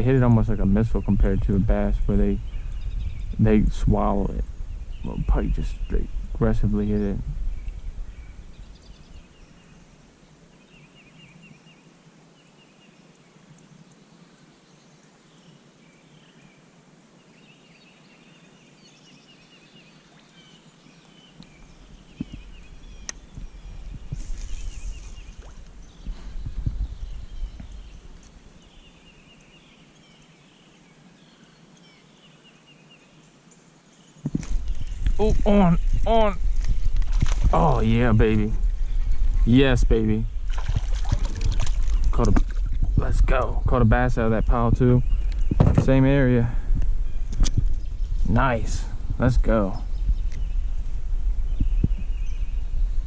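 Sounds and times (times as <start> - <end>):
soft outdoor hiss: 0.0 - 53.0
faint bird chirps: 4.7 - 36.3, 49.2 - 53.0.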